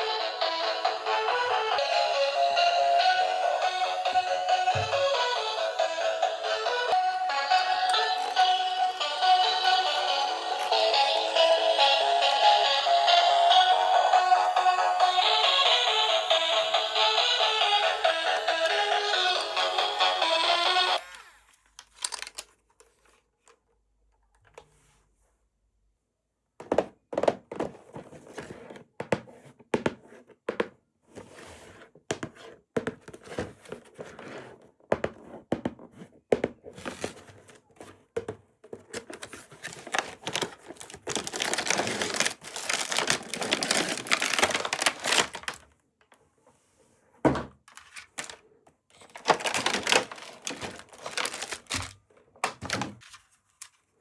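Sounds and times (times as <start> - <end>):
plastic packaging crinkling: 21.8 - 22.7, 39.0 - 45.8, 47.7 - 53.8
plastic and metal parts clicking: 21.8 - 23.6, 47.7 - 52.9.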